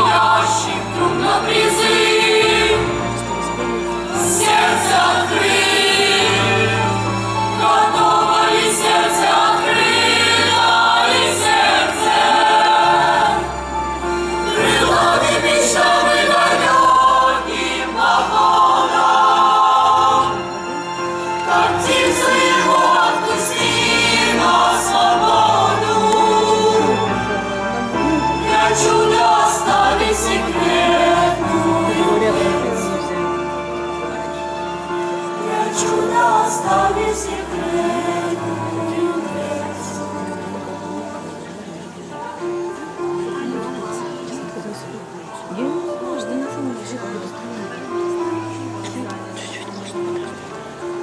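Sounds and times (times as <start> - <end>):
boys choir singing: 0.0 - 33.6, 35.1 - 41.7.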